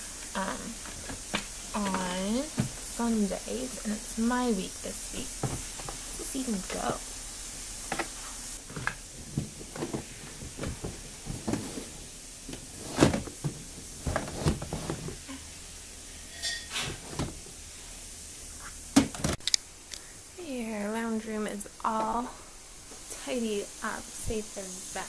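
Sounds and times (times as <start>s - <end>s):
household items knocking and clattering: 5.4s - 6.2s, 7.9s - 15.3s, 16.5s - 17.5s.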